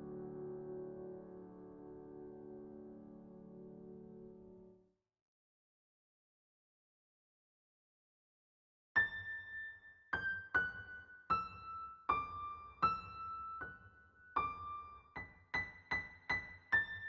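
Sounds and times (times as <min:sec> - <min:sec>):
slow piano melody: 0:00.0 - 0:04.8, 0:09.0 - 0:17.0.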